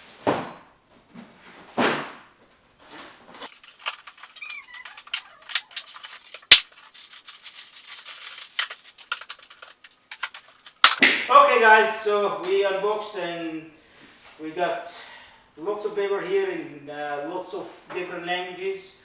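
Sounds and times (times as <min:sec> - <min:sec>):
packaging paper crinkling: 0:03.5 - 0:11.0.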